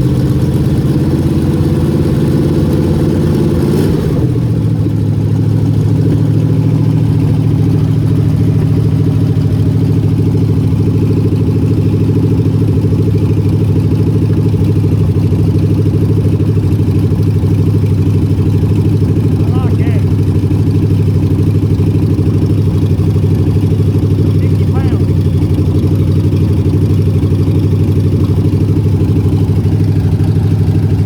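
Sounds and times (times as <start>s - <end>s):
engine idling: 0.0s - 31.0s.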